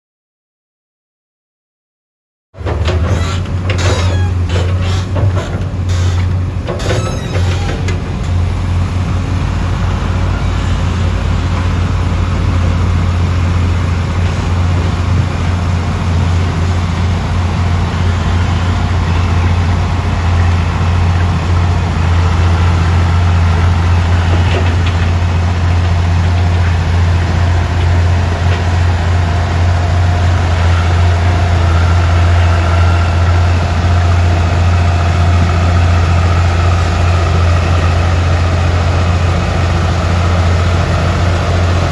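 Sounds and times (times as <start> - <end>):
diesel engine humming: 2.6 - 41.9.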